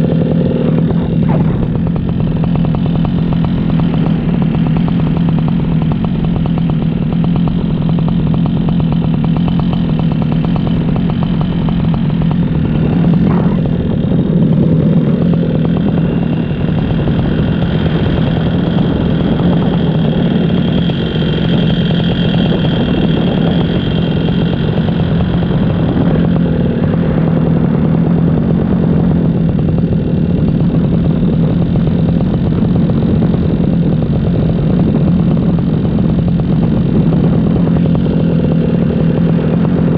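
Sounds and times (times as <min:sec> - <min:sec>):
paramotor engine and propeller: 0:00.0 - 0:39.9.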